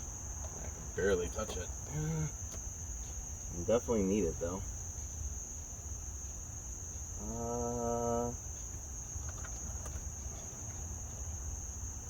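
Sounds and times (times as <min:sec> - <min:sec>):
crickets trilling: 0:00.0 - 0:12.0
man humming: 0:07.2 - 0:08.4.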